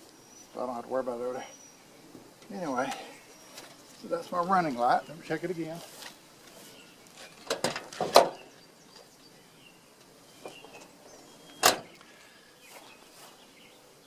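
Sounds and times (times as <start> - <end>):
faint bird chirps: 8.3 - 14.0.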